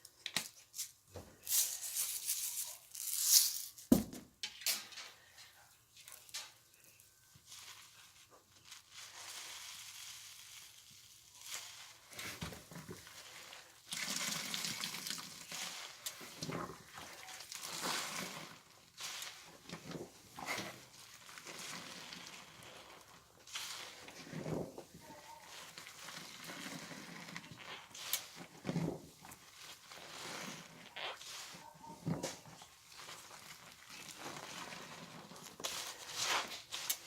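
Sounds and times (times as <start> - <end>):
wet squelching of soapy laundry: 7.4 - 37.0.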